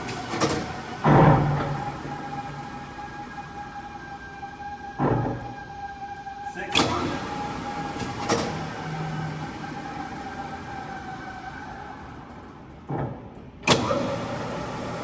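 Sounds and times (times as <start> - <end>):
lathe humming with light whine: 0.0 - 12.8, 13.7 - 15.0
lathe gear shift clunks: 12.9 - 15.0.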